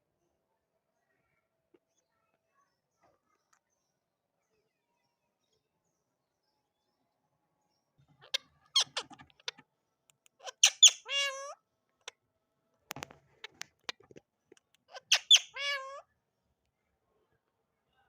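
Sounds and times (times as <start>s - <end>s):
parakeet calling: 8.2s - 9.6s, 10.4s - 11.6s, 14.9s - 16.0s.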